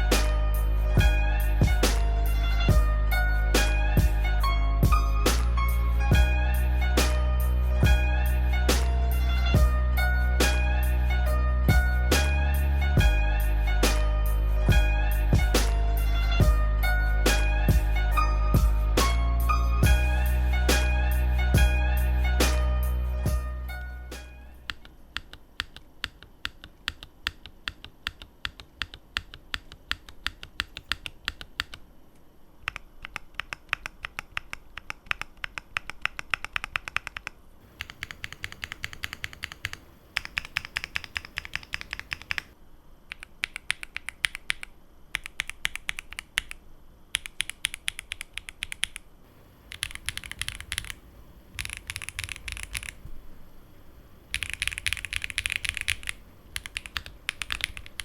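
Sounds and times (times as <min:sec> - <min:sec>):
mechanical keyboard typing: 0:24.6 - 0:31.8, 0:32.6 - 0:49.1, 0:49.7 - 0:53.1, 0:54.3 - 0:58.0.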